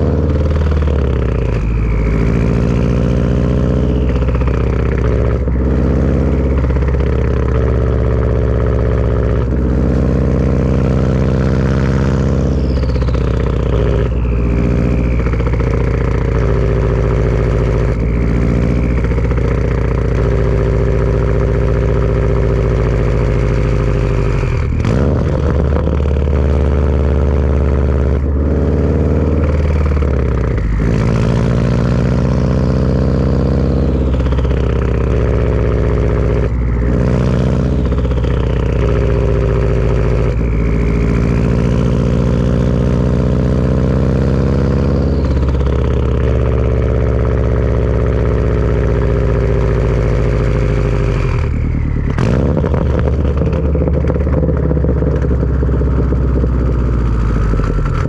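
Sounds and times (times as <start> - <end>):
turbo whistle sliding down: 0.0 - 5.4, 11.7 - 21.9
turbocharged car engine: 0.0 - 58.0.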